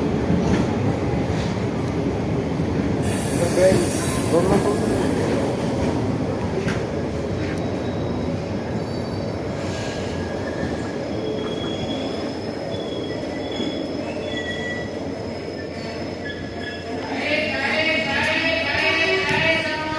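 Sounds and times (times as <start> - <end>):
train wheels rumbling on rail: 0.0 - 19.9
train clanks: 3.0 - 7.7
high-pitched wheel squeals: 11.1 - 17.0.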